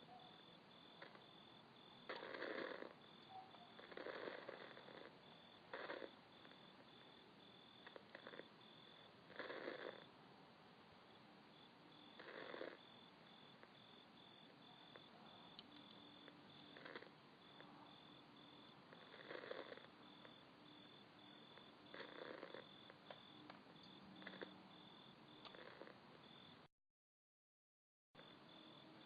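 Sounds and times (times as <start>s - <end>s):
faint high pulsing chirping: 0.0s - 10.2s, 11.0s - 26.7s.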